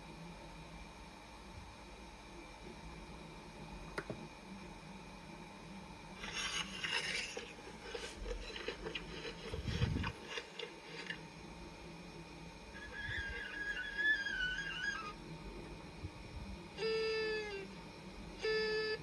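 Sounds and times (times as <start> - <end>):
scraping rustle: 6.2 - 11.2.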